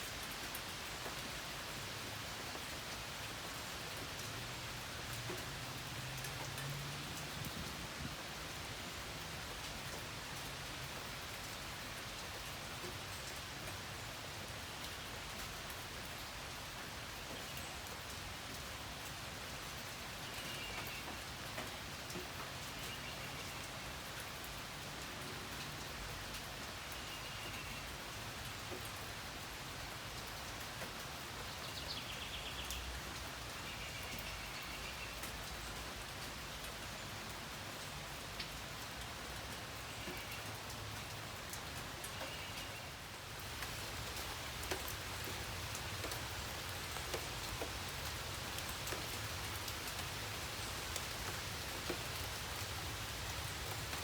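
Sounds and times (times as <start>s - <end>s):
steady rain hiss: 0.0s - 54.0s
water dripping: 43.4s - 54.0s.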